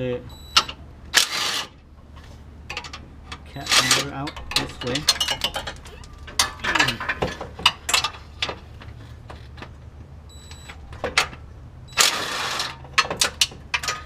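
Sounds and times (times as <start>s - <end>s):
metallic clinks and scraping of tools: 2.2s - 9.7s.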